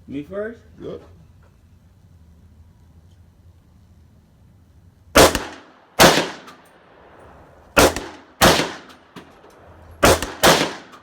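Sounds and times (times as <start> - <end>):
loud gunshots with echo: 5.2 - 6.5, 7.8 - 8.9, 10.0 - 11.0.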